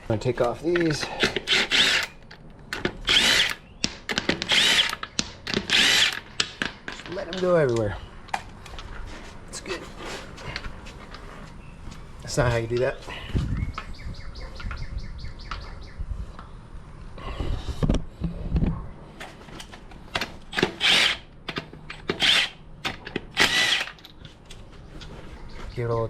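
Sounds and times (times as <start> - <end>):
power tool spinning lug nuts: 0.9 - 6.6, 20.5 - 21.3, 21.9 - 24.1.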